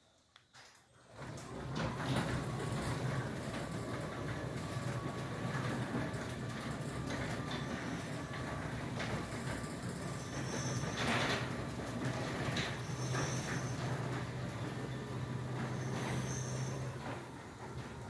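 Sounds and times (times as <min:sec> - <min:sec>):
garage door opener rumbling: 0:00.6 - 0:18.0.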